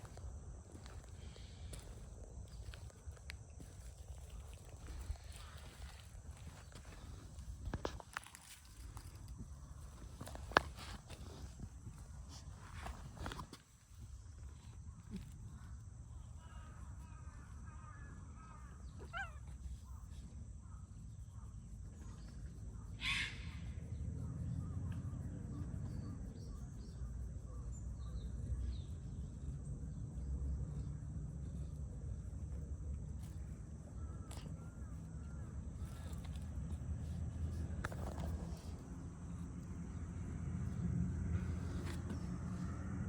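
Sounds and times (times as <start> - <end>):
steady low rumble: 0.0 - 18.9, 19.8 - 43.0
bird calls: 15.1 - 20.0, 20.6 - 29.3
harsh raspy bird call: 16.4 - 19.5, 23.0 - 23.8.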